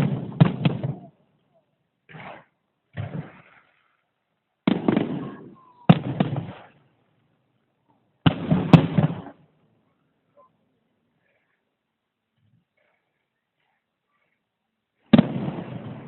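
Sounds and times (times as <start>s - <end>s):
fireworks banging and crackling: 0.0s - 1.2s, 4.6s - 6.9s, 8.2s - 9.4s, 15.0s - 16.0s.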